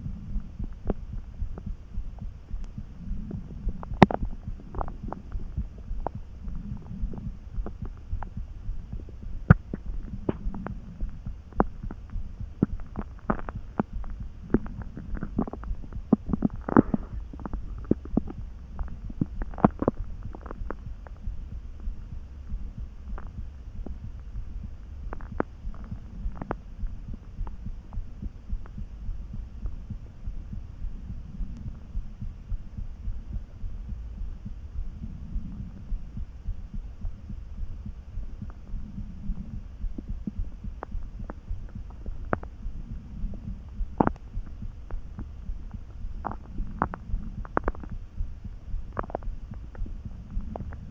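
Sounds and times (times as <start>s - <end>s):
steady low hum: 0.0s - 50.9s
stomach gurgling: 2.7s - 24.2s, 25.0s - 28.8s, 38.4s - 50.9s.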